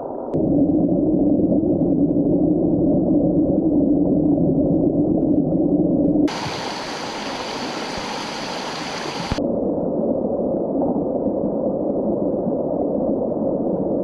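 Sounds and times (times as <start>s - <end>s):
mountain stream rushing: 6.3s - 9.4s.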